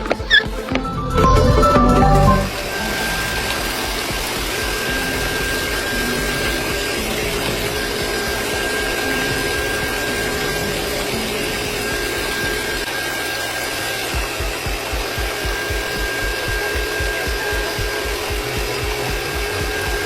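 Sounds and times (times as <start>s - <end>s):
small electric motor whining: 0.1s - 20.0s.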